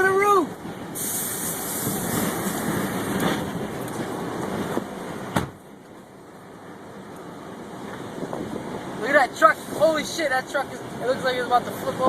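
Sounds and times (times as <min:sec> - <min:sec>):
strong wind rushing: 0:00.0 - 0:05.4, 0:07.3 - 0:10.0.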